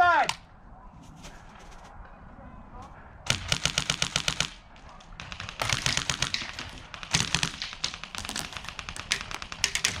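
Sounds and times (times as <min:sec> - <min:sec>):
airsoft guns firing bursts: 0:03.3 - 0:04.6, 0:05.2 - 0:10.0.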